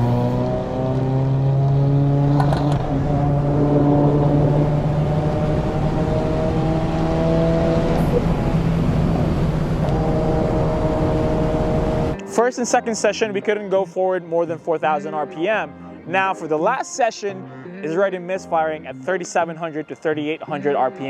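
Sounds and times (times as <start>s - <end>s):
car engine accelerating: 0.0s - 12.2s.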